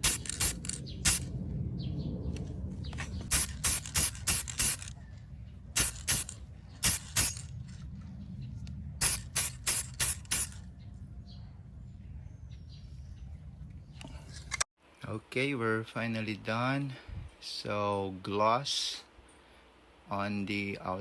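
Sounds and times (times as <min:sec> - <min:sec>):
aerosol spray can hissing: 0:00.0 - 0:01.2, 0:03.3 - 0:04.9, 0:05.8 - 0:07.4, 0:09.0 - 0:10.6.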